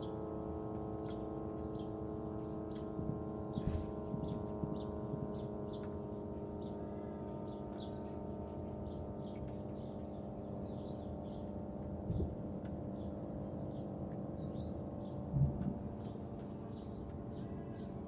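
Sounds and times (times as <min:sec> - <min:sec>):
steady hum of held tones: 0:00.0 - 0:18.0
small birds chirping: 0:00.9 - 0:18.0.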